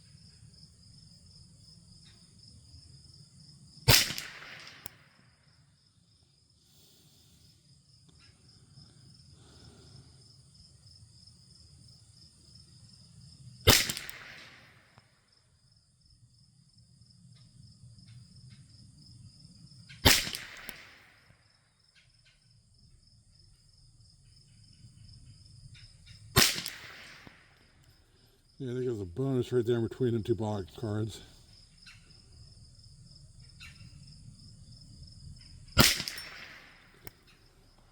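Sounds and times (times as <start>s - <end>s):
insects chirring: 0.0s - 37.9s
rifle shots with echo: 3.9s - 5.2s, 13.7s - 14.9s, 20.0s - 21.2s, 26.3s - 27.8s, 35.8s - 37.4s.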